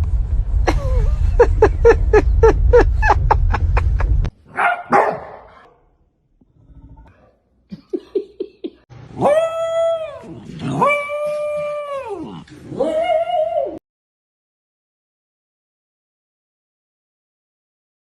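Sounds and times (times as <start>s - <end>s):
steady low rumble: 0.0s - 4.5s
dog barking: 4.5s - 5.8s.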